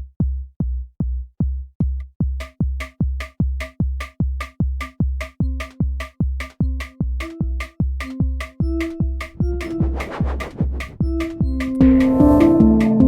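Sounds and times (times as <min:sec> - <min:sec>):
deep kick drum: 0:00.0 - 0:10.0
held synth note: 0:11.0 - 0:13.0.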